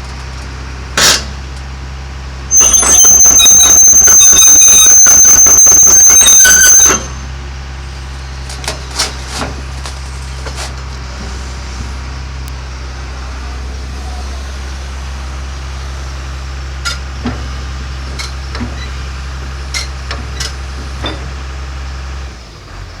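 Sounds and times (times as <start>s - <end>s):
diesel engine running: 0.0s - 23.0s.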